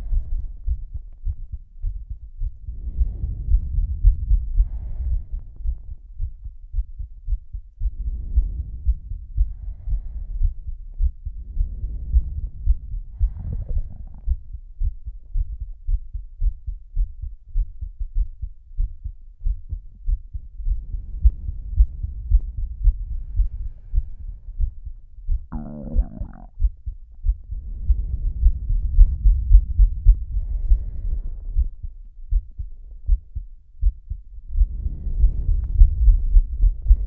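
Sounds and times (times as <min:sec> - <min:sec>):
heartbeat thuds: 0:00.0 - 0:37.0.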